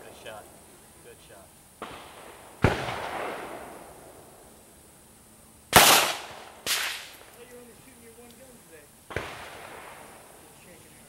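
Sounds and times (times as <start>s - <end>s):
handgun shots: 5.8s - 7.2s.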